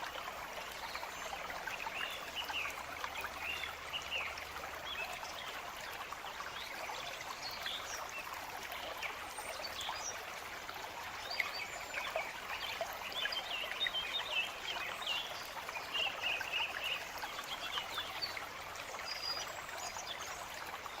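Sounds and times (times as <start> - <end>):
stream trickling: 0.0 - 21.0.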